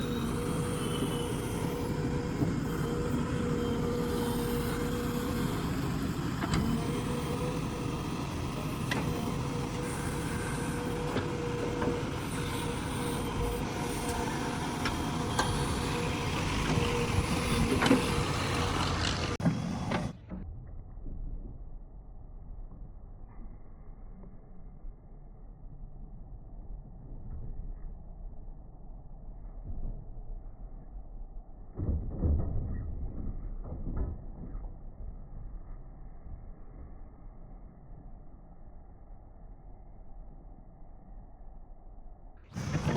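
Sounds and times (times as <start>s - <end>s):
digger diesel engine running: 0.0s - 20.2s, 42.5s - 42.9s.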